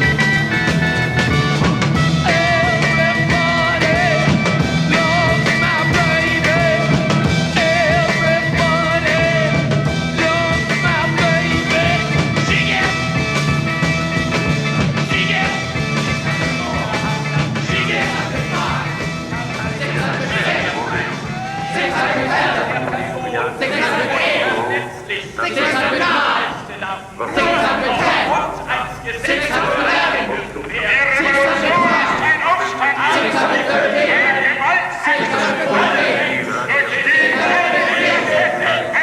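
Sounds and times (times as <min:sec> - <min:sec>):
psychedelic rock music: 0:00.0 - 0:23.2.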